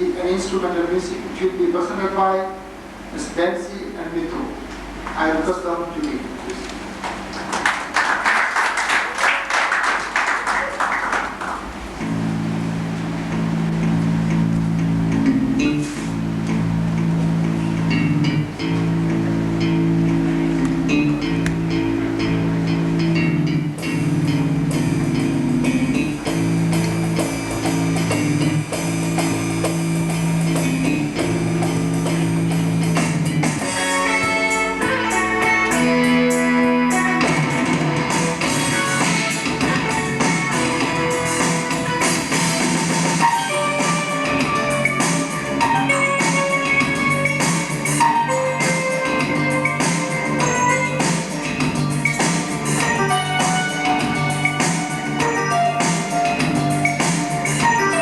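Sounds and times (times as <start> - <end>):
audience applauding: 7.0 - 11.8
instrumental music low chord: 11.7 - 58.0.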